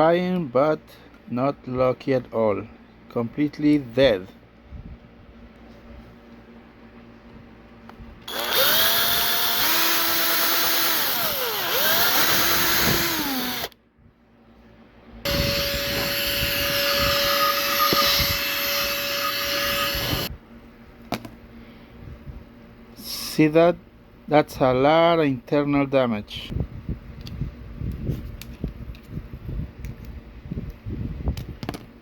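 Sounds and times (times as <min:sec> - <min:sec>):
power drill running: 0:08.3 - 0:13.8, 0:15.3 - 0:20.3.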